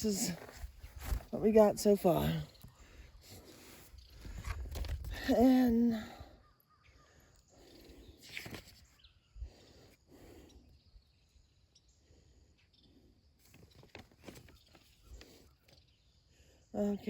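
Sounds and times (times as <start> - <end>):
faint rustles: 7.8 - 9.1.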